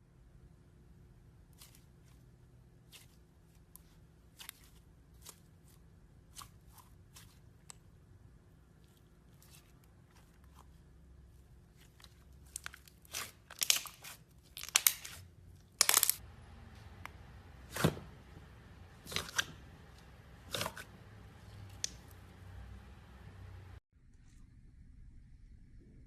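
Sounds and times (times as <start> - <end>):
slime popping and crackling: 11.9 - 16.2.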